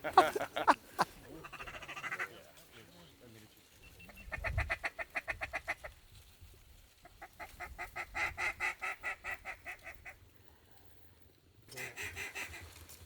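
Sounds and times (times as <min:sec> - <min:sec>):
duck call chatter: 0:00.0 - 0:02.4, 0:04.2 - 0:05.9, 0:11.7 - 0:12.7.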